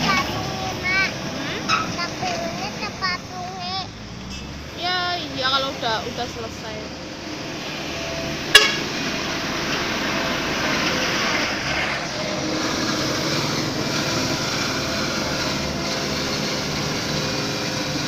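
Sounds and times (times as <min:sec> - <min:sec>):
heavy machinery engine running: 0:00.0 - 0:18.0
loud metal clank: 0:04.1 - 0:04.6, 0:08.4 - 0:10.0.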